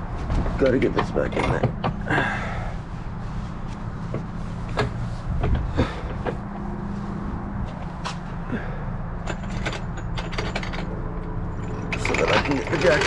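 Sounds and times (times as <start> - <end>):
steady low hum: 0.0 - 12.1.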